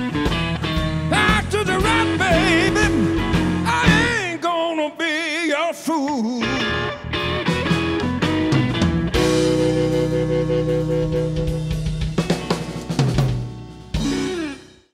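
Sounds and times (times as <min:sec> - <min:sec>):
drums rolling and hitting: 0:00.0 - 0:04.4, 0:07.2 - 0:14.9
held guitar chord: 0:06.6 - 0:14.8.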